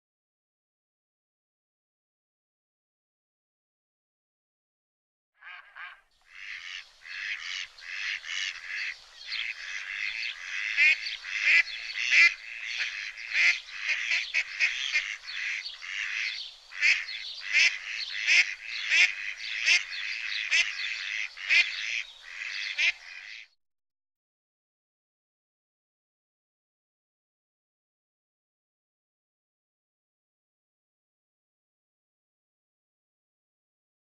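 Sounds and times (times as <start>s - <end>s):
flock of waterfowl calling: 5.4s - 23.5s.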